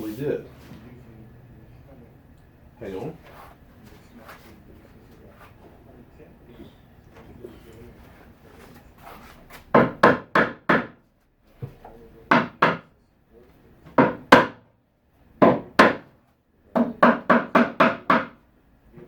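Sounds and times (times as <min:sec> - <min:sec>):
hammer knocking on wood: 0:09.7 - 0:11.0, 0:11.6 - 0:12.9, 0:13.9 - 0:14.7, 0:15.4 - 0:16.1, 0:16.7 - 0:18.4.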